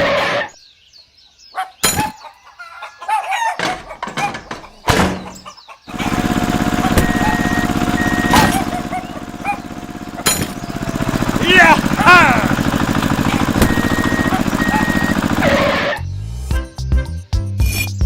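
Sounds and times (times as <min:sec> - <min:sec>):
chicken clucking: 0:01.6 - 0:06.2
knocks: 0:03.6 - 0:05.4, 0:10.2 - 0:10.8
small engine running: 0:05.9 - 0:16.0.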